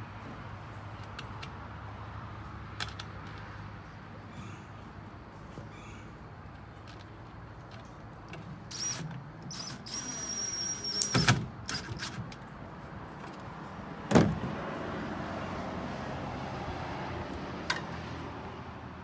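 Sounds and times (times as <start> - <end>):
power drill whine: 8.7 - 12.0.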